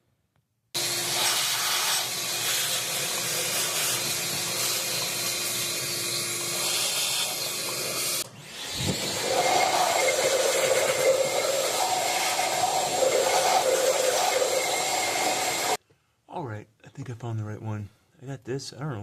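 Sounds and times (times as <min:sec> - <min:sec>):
air blower blasting: 0:00.8 - 0:15.8.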